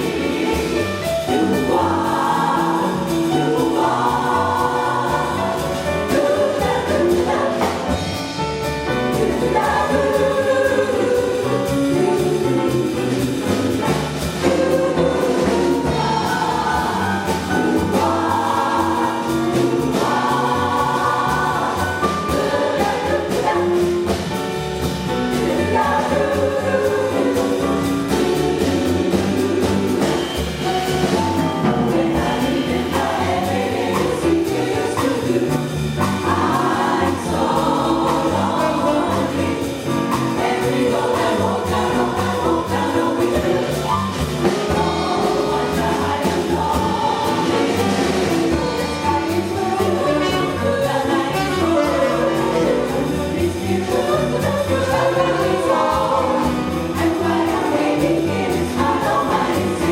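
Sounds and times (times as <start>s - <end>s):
drums: 0.0s - 59.9s
jazz chorus singing in harmony: 0.0s - 59.9s
piano: 0.0s - 59.9s
upright bass: 0.0s - 59.9s
saxophone: 47.4s - 55.1s.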